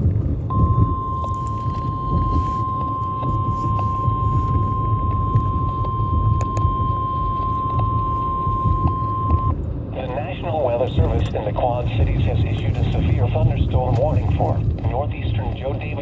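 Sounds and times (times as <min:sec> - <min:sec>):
low rumbling background: 0:00.0 - 0:16.0
steady single-pitch alarm beep: 0:00.5 - 0:09.6.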